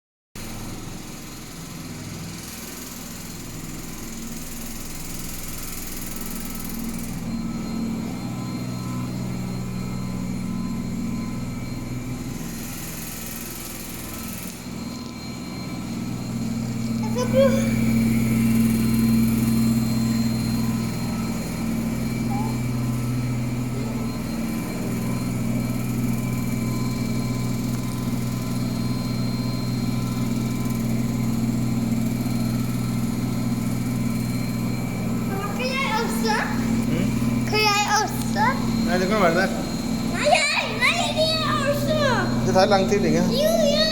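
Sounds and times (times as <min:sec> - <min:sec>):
washing machine droning hum: 0:00.4 - 0:43.9.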